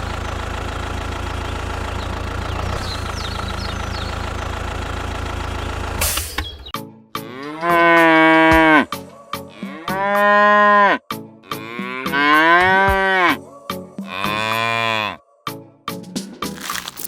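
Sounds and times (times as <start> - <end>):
cattle mooing: 7.2 - 8.8, 9.6 - 13.4, 14.1 - 15.2.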